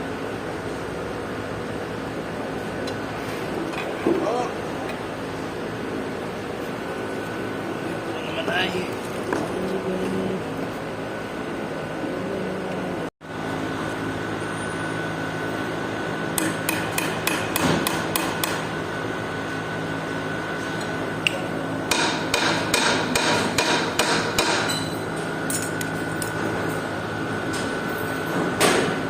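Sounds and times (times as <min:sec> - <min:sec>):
mechanical hum: 0:00.0 - 0:29.0
hammer strikes: 0:16.4 - 0:18.7, 0:21.9 - 0:24.9.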